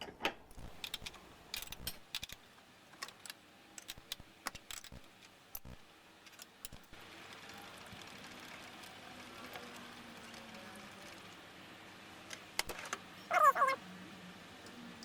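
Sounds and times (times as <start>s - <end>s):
light metallic clicks and ticks: 0.5s - 7.0s.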